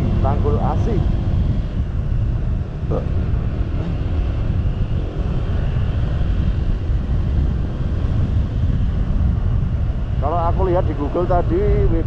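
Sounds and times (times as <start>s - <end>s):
motorcycle engine rumble: 0.0s - 12.0s
wind on microphone: 0.0s - 12.0s.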